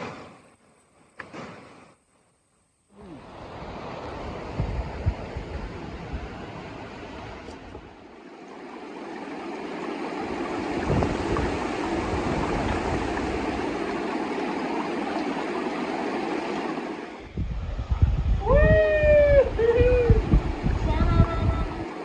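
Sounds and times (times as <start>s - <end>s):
rushing river water: 3.0s - 17.3s.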